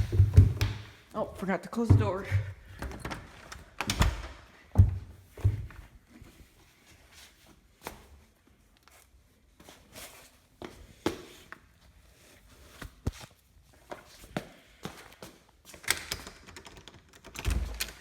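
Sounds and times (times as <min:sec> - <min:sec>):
soft knocks and scuffs: 0:00.0 - 0:02.8, 0:04.7 - 0:15.5.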